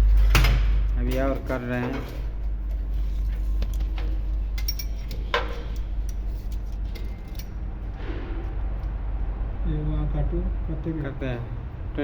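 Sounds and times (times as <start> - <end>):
steady low hum: 0.0 - 12.0
light metallic clinks: 4.6 - 7.6.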